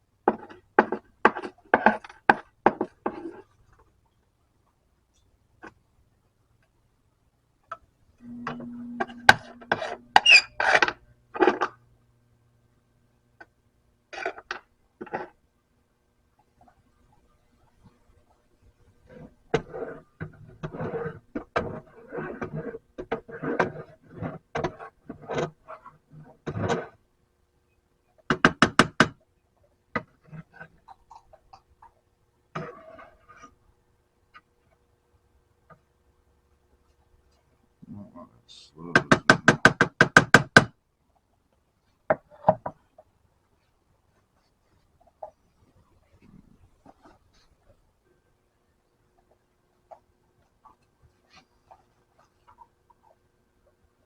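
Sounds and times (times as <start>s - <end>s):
low steady hum: 3.0s - 22.6s.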